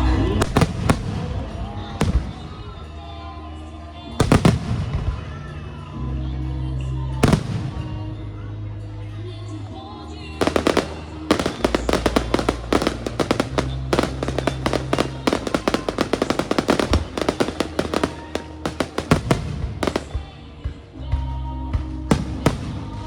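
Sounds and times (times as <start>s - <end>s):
fireworks barrage: 0.0s - 2.9s, 4.2s - 5.4s, 7.2s - 8.1s, 10.4s - 20.8s, 22.1s - 23.0s.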